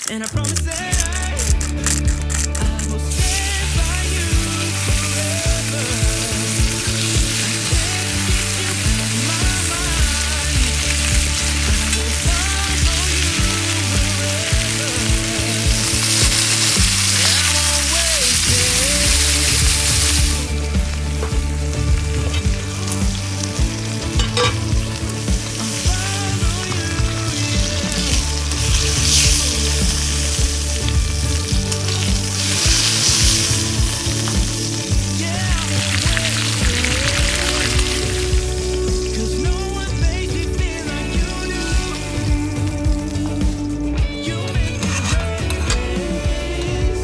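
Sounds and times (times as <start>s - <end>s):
background music: 0.0s - 47.0s
meat sizzling in a pan: 0.0s - 47.0s.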